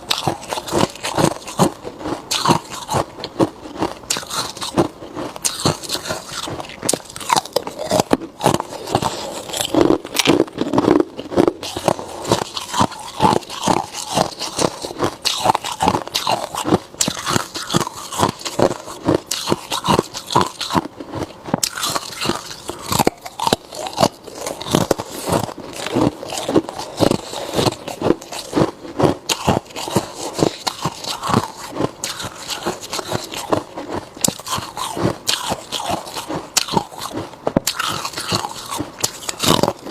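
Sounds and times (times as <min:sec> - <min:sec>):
ice being chewed crunching: 0:00.0 - 0:39.9.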